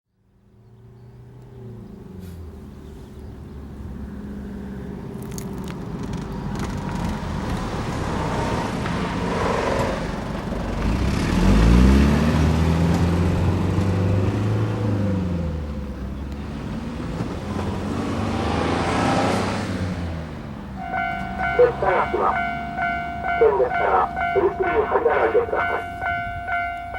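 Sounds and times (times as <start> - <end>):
vehicle engine passing by: 7.1 - 15.6, 16.5 - 20.4.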